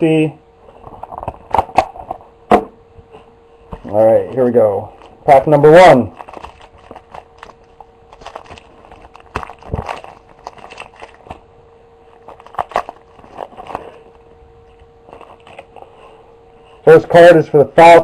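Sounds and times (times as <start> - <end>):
card pack wrapper tearing and crinkling: 6.0 - 11.4, 12.1 - 14.1, 15.1 - 15.8.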